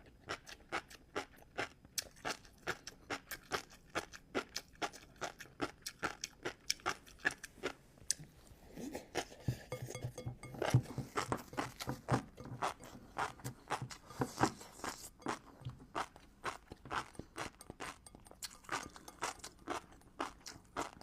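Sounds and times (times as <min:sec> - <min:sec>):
wet crunchy chewing: 0:10.6 - 0:21.0.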